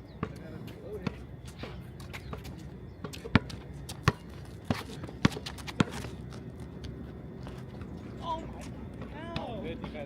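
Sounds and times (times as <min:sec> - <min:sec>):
basketball bouncing on court: 0:02.3 - 0:06.0.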